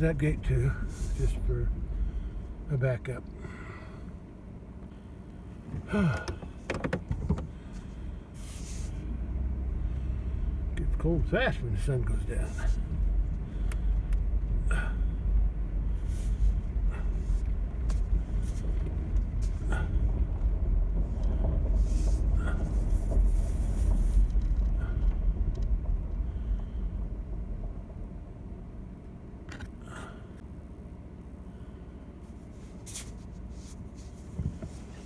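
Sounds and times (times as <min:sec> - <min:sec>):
vehicle rumbling over rough ground: 0:00.0 - 0:35.0
knocks and rattles: 0:06.2 - 0:07.5.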